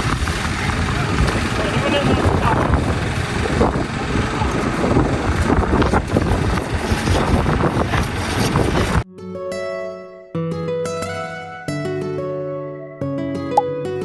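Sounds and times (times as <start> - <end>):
wind buffeting microphone: 0.0 - 9.0
plucked-string background music: 9.1 - 14.0.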